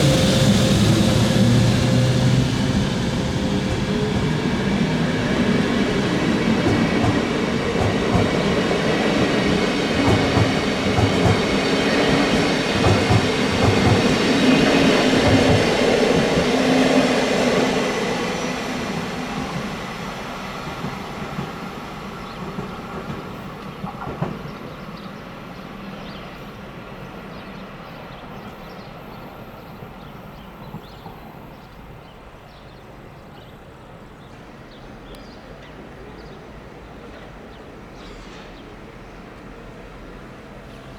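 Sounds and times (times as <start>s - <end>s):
train wheels clacking over rails: 0.0s - 26.4s, 35.4s - 40.9s.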